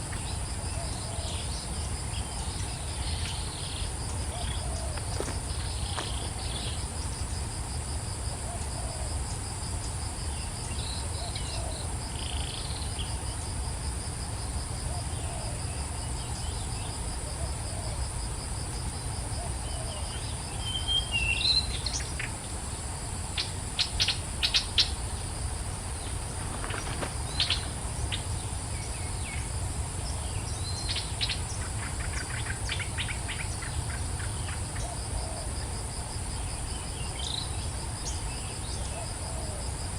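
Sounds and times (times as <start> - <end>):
crickets trilling: 0.0 - 39.9
birds calling: 0.1 - 6.8, 23.4 - 29.4.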